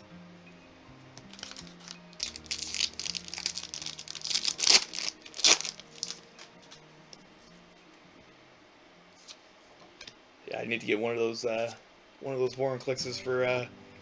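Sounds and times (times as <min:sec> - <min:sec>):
sharp crackles: 0:01.2 - 0:06.2
foil wrapper crinkling: 0:01.2 - 0:06.8.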